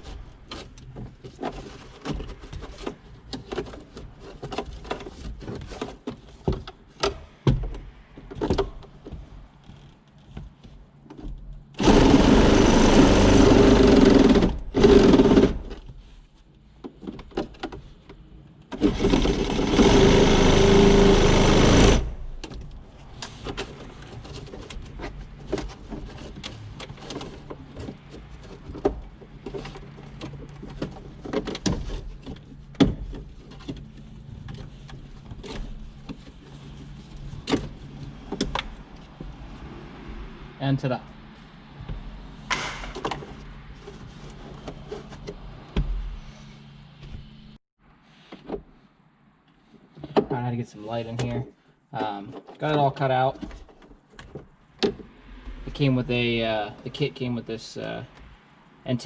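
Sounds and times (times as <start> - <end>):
power saw cutting: 11.8 - 15.6, 18.8 - 22.2.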